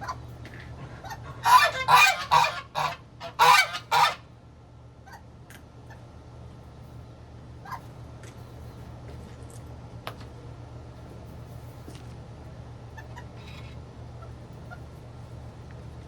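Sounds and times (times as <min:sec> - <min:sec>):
geese honking: 0:01.0 - 0:04.2.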